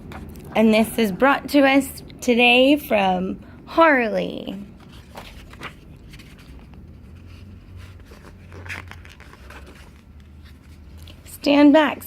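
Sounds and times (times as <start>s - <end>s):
low steady hum: 0.0s - 12.0s
rustling and handling noises: 4.4s - 12.0s.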